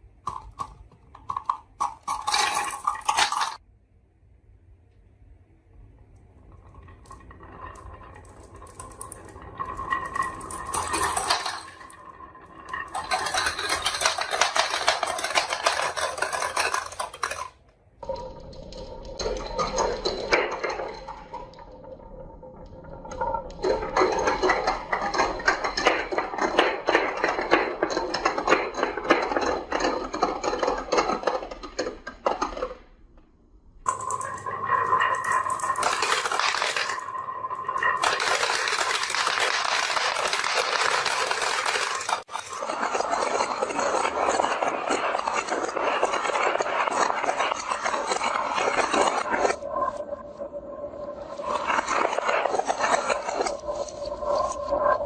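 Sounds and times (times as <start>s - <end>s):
marbles rolling down wooden run: 0.3s - 3.6s, 6.9s - 32.9s, 33.8s - 55.0s.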